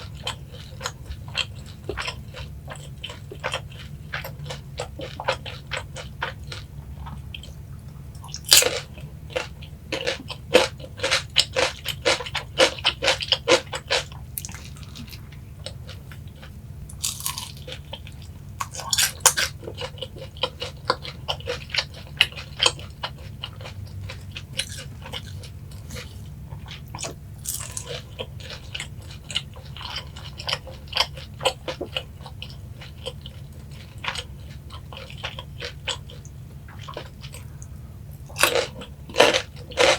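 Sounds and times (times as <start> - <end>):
crunching and chewing fried chicken: 0.0 - 39.9
steady low hum: 0.0 - 39.9.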